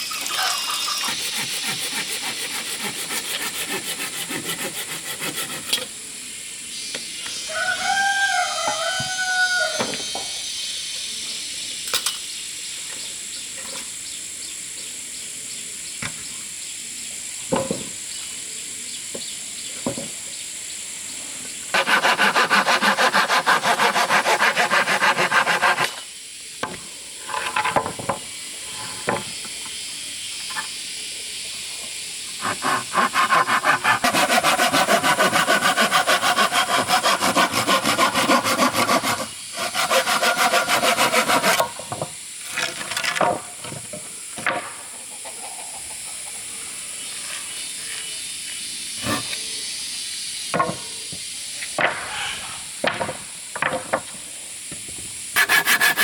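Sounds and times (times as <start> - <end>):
hand saw cutting wood: 0.0 - 5.9, 21.7 - 26.0, 32.4 - 41.8, 55.4 - 56.0.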